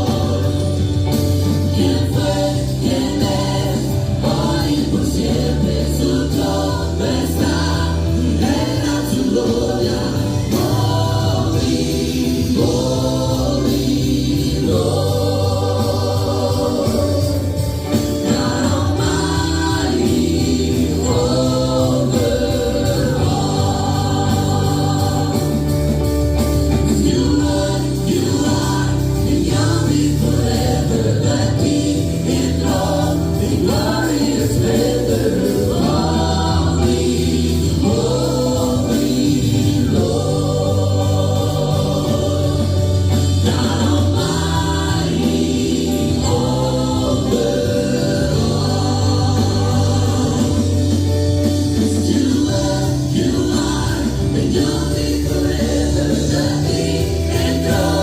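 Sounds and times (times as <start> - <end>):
gospel choir singing: 0.0 - 58.0
sustained bass notes: 0.0 - 58.0.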